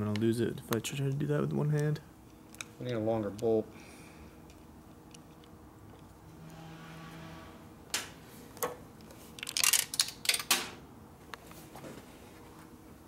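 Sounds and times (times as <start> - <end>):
metal hardware clinking and rattling: 9.4 - 10.6.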